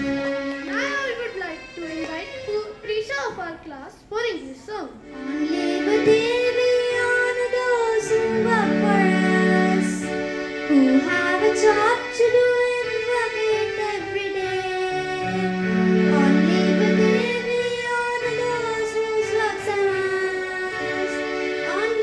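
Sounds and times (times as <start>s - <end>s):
instrumental accompaniment: 0.0s - 4.2s, 4.9s - 22.0s
girl singing slow song: 10.7s - 15.5s.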